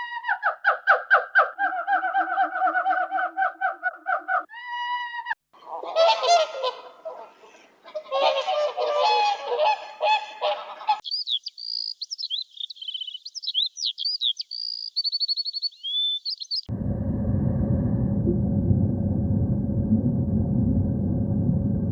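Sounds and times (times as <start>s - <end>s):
geese honking: 5.6s - 11.0s
high-pitched bird chirps: 11.0s - 16.7s.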